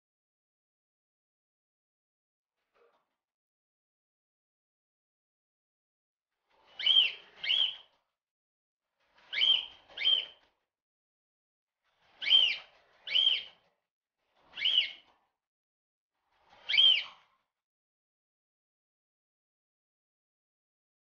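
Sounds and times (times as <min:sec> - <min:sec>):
cockatiel chirping: 0:06.8 - 0:07.8, 0:09.3 - 0:10.3, 0:12.2 - 0:13.5, 0:14.6 - 0:15.0.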